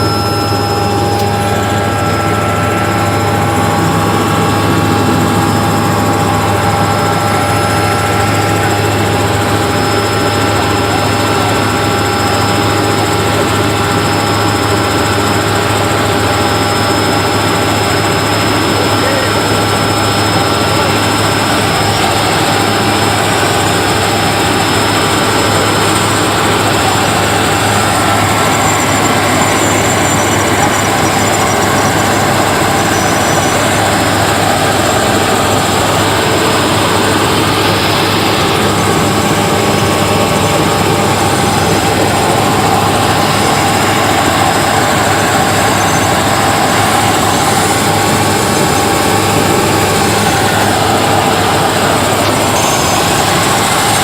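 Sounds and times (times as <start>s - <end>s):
helicopter engine and rotor: 0.0s - 54.0s.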